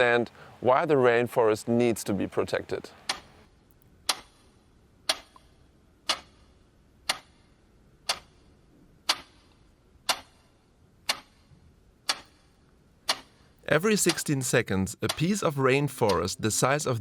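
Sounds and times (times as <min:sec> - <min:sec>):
clock ticking: 0:07.0 - 0:07.4, 0:08.0 - 0:08.4, 0:09.0 - 0:09.4, 0:10.1 - 0:10.3, 0:13.1 - 0:17.0.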